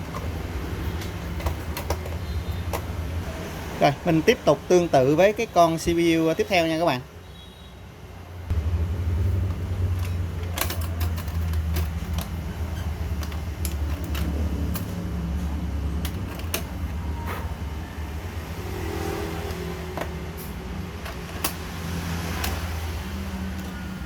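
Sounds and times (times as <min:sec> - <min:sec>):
clicks of handling computer parts: 0:00.0 - 0:03.0, 0:16.0 - 0:17.4, 0:21.0 - 0:23.8.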